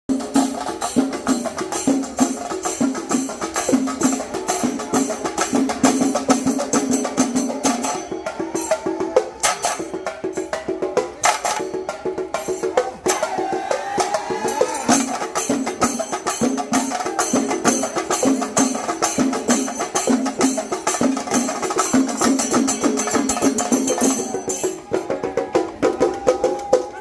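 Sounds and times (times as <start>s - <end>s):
hand cymbals clashing: 0.1s - 26.8s
drums beaten in fast rhythm: 0.1s - 27.0s.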